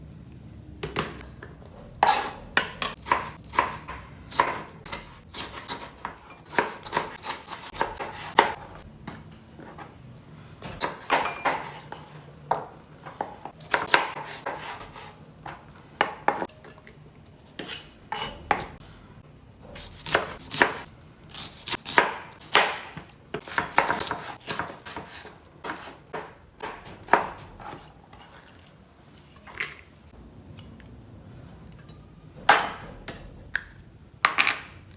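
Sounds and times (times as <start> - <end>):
utensils and dishes clinking: 10.6 - 12.3.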